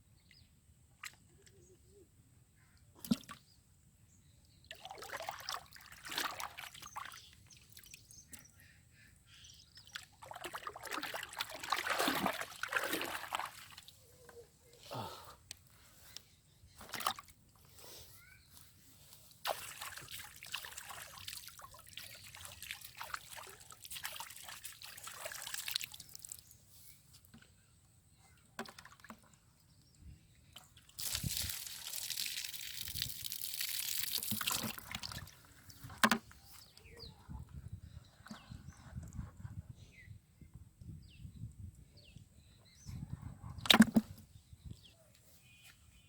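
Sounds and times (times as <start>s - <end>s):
water splashing and trickling: 3.0s - 3.5s, 4.5s - 8.6s, 9.7s - 14.2s, 16.7s - 17.7s, 19.2s - 27.4s, 28.4s - 29.6s, 30.4s - 36.2s.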